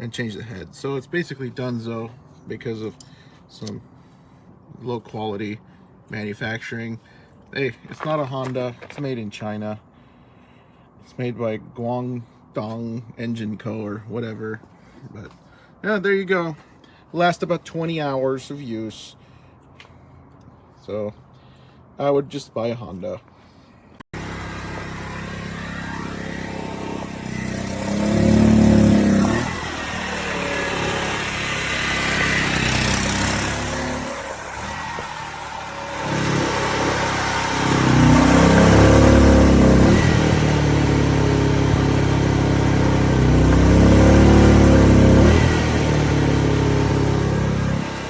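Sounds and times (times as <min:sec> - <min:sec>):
engine revving: 0:24.1 - 0:48.0.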